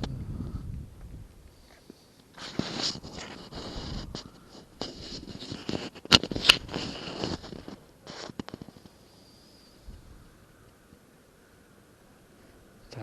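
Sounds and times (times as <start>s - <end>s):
rustling and scraping of gear: 1.0s - 10.1s.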